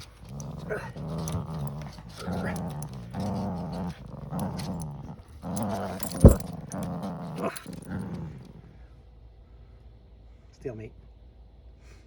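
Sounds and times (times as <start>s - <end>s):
dogs growling: 0.0s - 8.8s.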